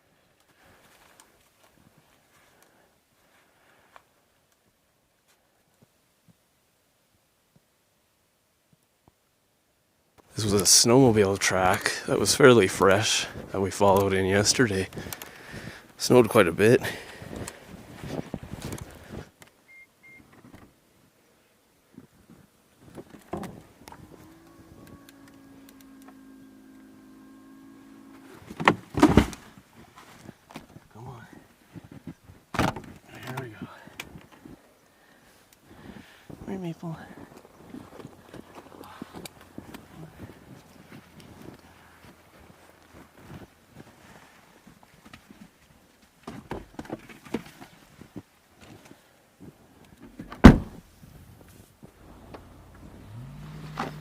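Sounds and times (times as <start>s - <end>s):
motor whine: 24.0s - 28.5s
footsteps crunching in snow: 37.2s - 45.4s
loud thump: 50.4s - 50.8s.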